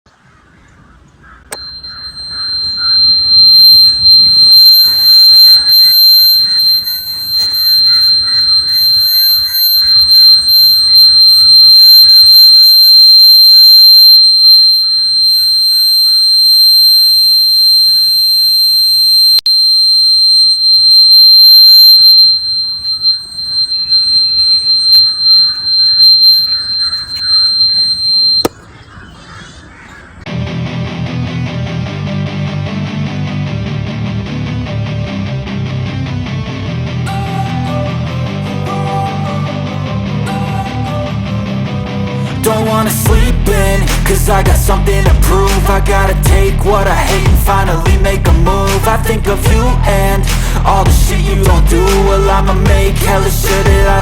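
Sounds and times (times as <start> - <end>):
high-pitched electric buzzer: 1.5 - 28.5
buzzer switch click: 1.5 - 28.6.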